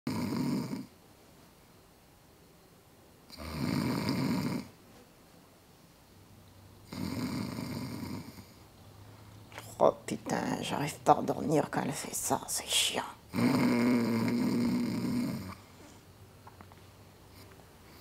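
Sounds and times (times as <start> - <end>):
woman snoring: 0.1 - 0.9, 3.3 - 4.8, 6.9 - 8.6, 13.0 - 15.7.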